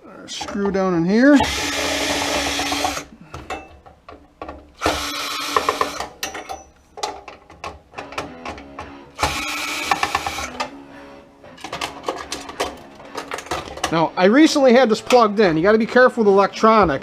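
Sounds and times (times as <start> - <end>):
power drill running: 1.4 - 3.1, 4.8 - 6.1, 9.2 - 10.6.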